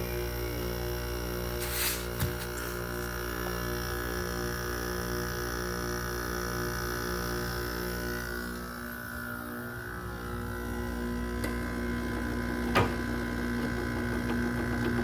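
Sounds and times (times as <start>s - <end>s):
air conditioner hum and whine: 0.0s - 15.0s.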